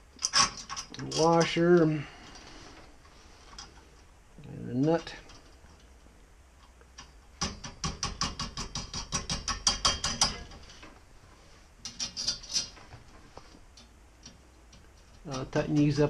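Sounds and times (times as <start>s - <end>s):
rapid metallic clicking: 6.6s - 10.5s.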